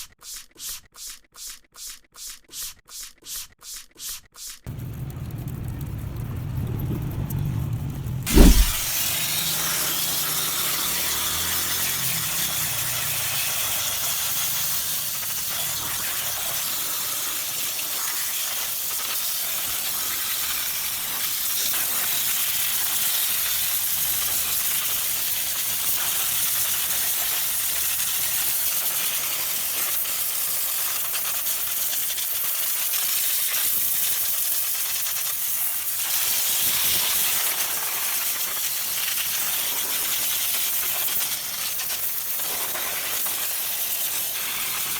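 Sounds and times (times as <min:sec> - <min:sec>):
faint low rumble: 0:04.7 - 0:08.9
spray jet hissing: 0:08.3 - 0:09.0.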